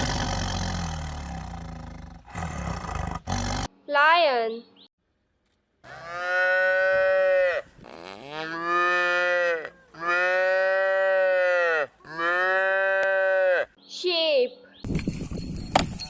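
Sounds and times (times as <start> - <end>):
cow mooing: 5.9 - 13.7.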